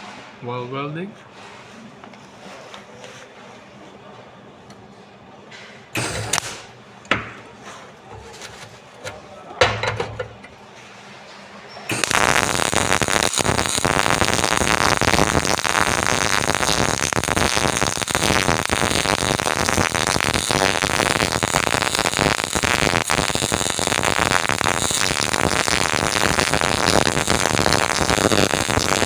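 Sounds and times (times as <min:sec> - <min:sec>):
welding arc crackling: 0:06.0 - 0:06.7, 0:11.9 - 0:29.0.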